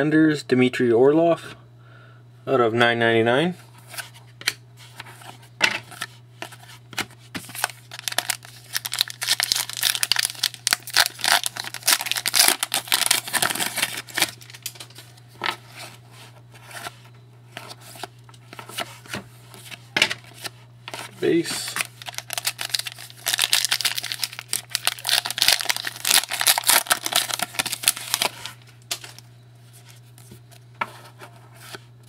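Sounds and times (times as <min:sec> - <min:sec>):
wrapper tearing and crinkling: 0:07.5 - 0:14.8, 0:21.6 - 0:29.2.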